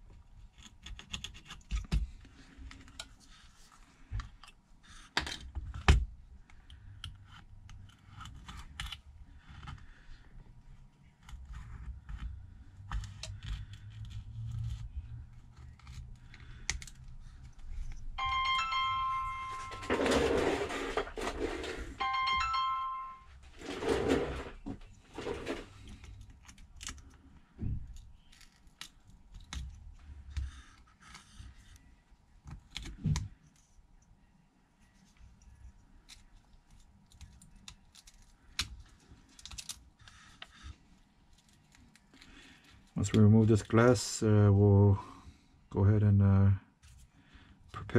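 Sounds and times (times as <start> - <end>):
electronic ringing tone: 18.2 - 20.9, 22.0 - 23.4.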